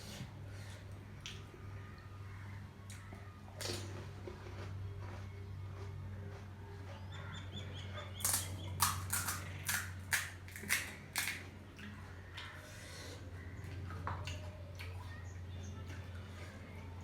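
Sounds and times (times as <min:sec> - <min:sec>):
crunchy snack being chewed: 0:02.9 - 0:07.1, 0:08.2 - 0:11.5.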